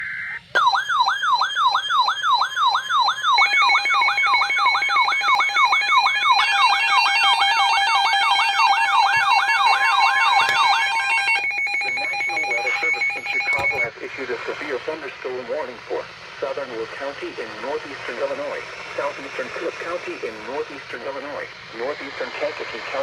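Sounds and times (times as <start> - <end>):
falling siren tone: 0.0 - 13.9
pulsing beep: 9.1 - 13.9.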